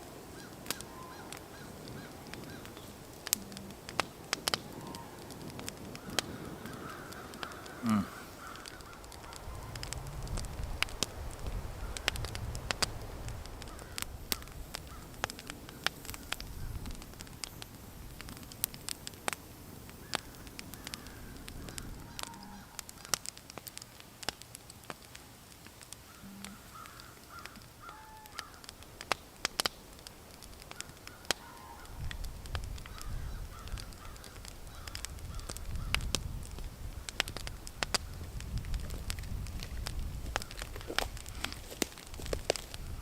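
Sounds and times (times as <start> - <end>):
campfire crackling and popping: 0.0 - 43.0
faint bird calls: 0.2 - 10.1, 20.0 - 23.4, 26.0 - 29.9, 30.6 - 36.2.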